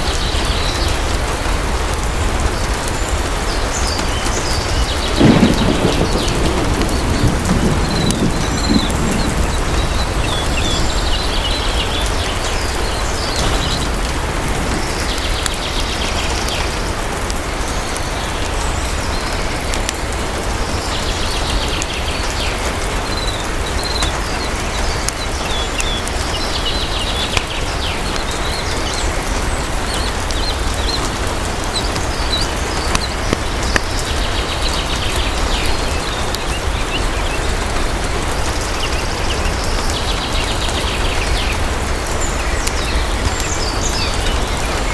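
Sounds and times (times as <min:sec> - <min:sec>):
heavy rain: 0:00.0 - 0:44.9
fireplace crackling: 0:04.9 - 0:09.8
deep low rumble: 0:05.0 - 0:11.9.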